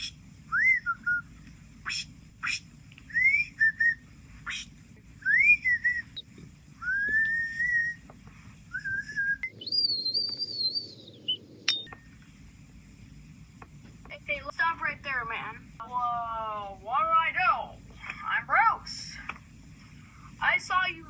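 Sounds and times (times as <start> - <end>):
high held whistle: 3.1 - 4.6, 5.2 - 6.2, 6.8 - 8.0, 8.7 - 12.0
gliding whistled notes: 8.8 - 12.0
sharp clicks: 9.5 - 11.9.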